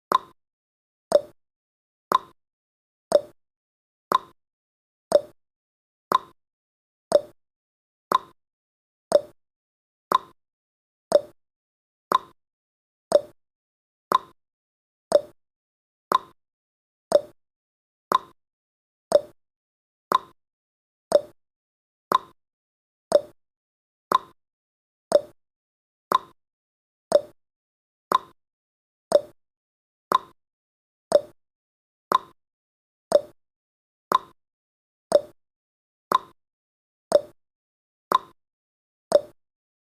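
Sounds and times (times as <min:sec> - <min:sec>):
clock tick-tock: 0:00.1 - 0:00.4, 0:01.1 - 0:01.4, 0:02.1 - 0:02.4, 0:03.1 - 0:03.4, 0:04.1 - 0:04.4, 0:05.1 - 0:05.4, 0:06.1 - 0:06.4, 0:07.1 - 0:07.4, 0:08.1 - 0:08.4, 0:09.1 - 0:09.4, 0:10.1 - 0:10.4, 0:11.1 - 0:11.4, 0:12.1 - 0:12.4, 0:13.1 - 0:13.4, 0:14.1 - 0:14.4, 0:15.1 - 0:15.4, 0:16.1 - 0:16.4, 0:17.1 - 0:17.4, 0:18.1 - 0:18.4, 0:19.1 - 0:19.4, 0:20.1 - 0:20.4, 0:21.1 - 0:21.4, 0:22.1 - 0:22.4, 0:23.1 - 0:23.4, 0:24.1 - 0:24.4, 0:25.1 - 0:25.4, 0:26.1 - 0:26.4, 0:27.1 - 0:27.4, 0:28.1 - 0:28.4, 0:29.1 - 0:29.4, 0:30.1 - 0:30.4, 0:31.1 - 0:31.4, 0:32.1 - 0:32.4, 0:33.1 - 0:33.4, 0:34.1 - 0:34.4, 0:35.1 - 0:35.4, 0:36.1 - 0:36.4, 0:37.1 - 0:37.4, 0:38.1 - 0:38.4, 0:39.1 - 0:39.4.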